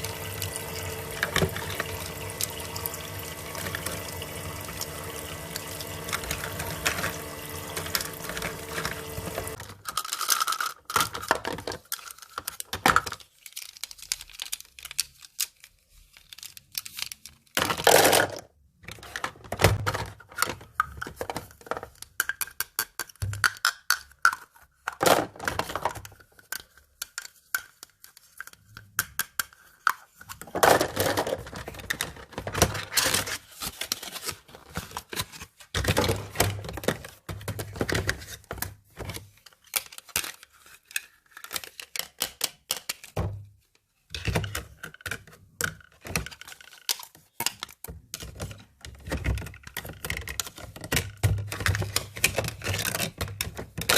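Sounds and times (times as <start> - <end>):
small water pump humming: 0.0 - 9.6
packaging crinkling: 0.0 - 17.9
plastic toy pieces clicking: 9.6 - 18.4, 21.8 - 24.6, 39.5 - 43.2.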